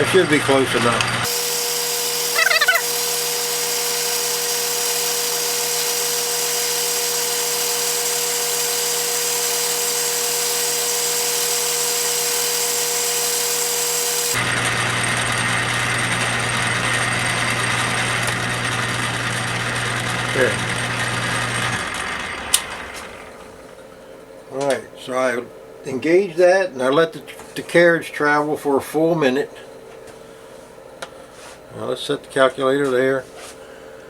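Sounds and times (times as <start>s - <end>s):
metal lathe whine: 0.2s - 23.4s
brief rising squeal: 2.3s - 3.1s.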